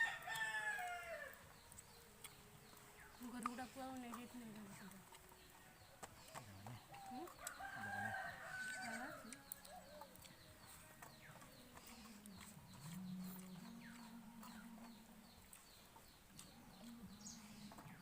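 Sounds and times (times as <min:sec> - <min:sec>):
rooster crowing: 0:00.0 - 0:01.4, 0:07.3 - 0:09.9
chickens clucking: 0:01.4 - 0:18.0.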